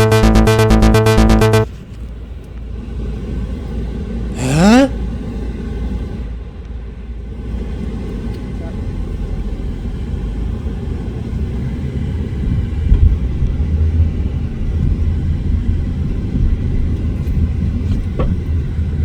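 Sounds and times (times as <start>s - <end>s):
road and engine rumble in car: 1.6s - 19.0s.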